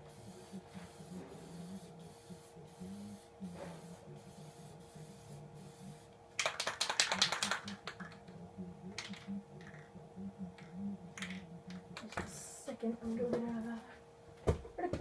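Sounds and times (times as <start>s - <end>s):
aerosol spray can hissing: 0.2s - 5.8s.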